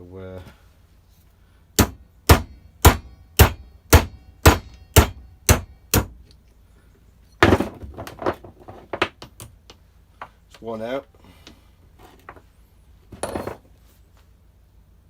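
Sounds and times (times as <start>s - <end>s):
hammer striking metal: 1.8s - 6.2s.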